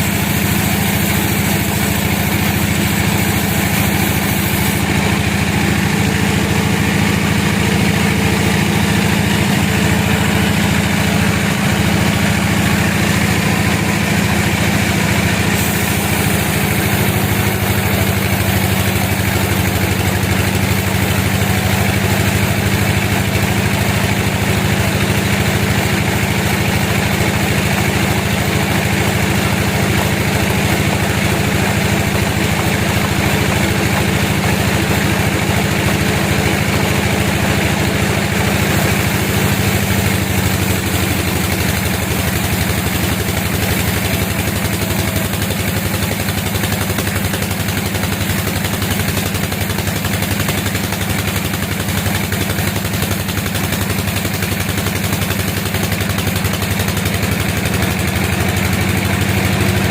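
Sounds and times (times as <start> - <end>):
sawmill engine running: 0.0 - 59.9.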